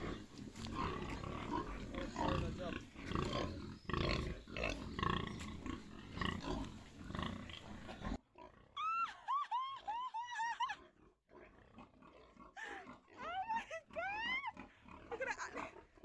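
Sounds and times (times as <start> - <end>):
piglets squealing: 0.0 - 8.2.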